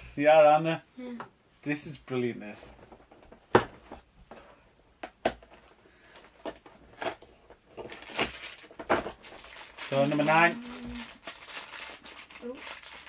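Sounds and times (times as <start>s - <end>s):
papery rustle: 7.8s - 13.0s.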